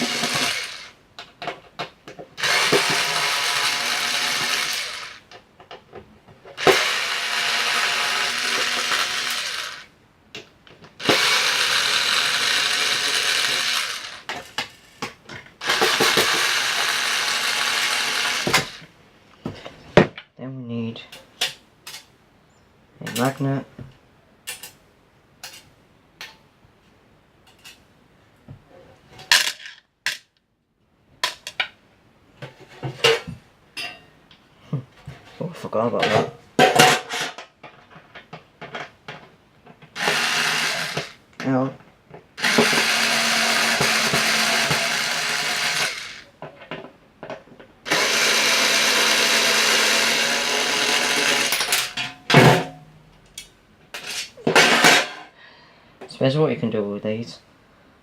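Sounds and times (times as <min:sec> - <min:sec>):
handheld electric power tool running: 0:00.0 - 0:01.0, 0:02.4 - 0:05.2, 0:06.6 - 0:09.9, 0:11.0 - 0:14.3, 0:15.6 - 0:18.9, 0:40.0 - 0:41.2, 0:42.4 - 0:46.3, 0:47.9 - 0:51.9.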